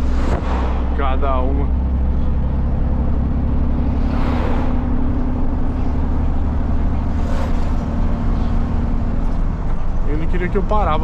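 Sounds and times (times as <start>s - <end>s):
brief rushing swells: 0.0s - 1.2s, 3.9s - 5.2s
truck diesel engine running: 0.0s - 11.0s.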